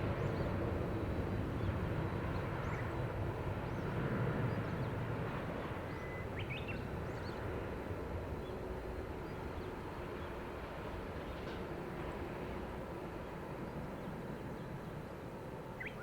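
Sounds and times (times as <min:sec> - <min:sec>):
jet engines rumbling: 0:00.0 - 0:16.0
birds chirping: 0:15.8 - 0:16.0.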